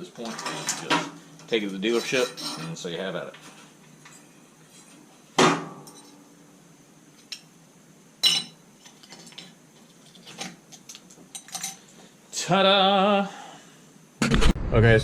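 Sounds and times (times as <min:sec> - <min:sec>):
metal parts clinking: 0:10.2 - 0:11.8.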